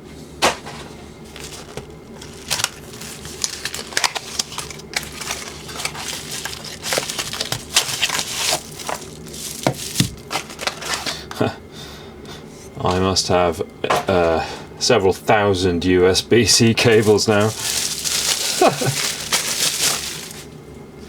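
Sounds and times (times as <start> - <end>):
plastic packaging crinkling: 1.2 - 11.2, 16.6 - 20.6.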